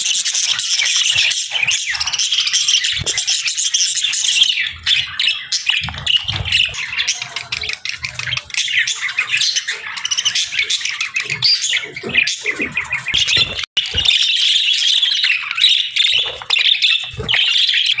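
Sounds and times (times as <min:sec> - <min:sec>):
budgerigars chattering and chirping: 0:00.0 - 0:18.0.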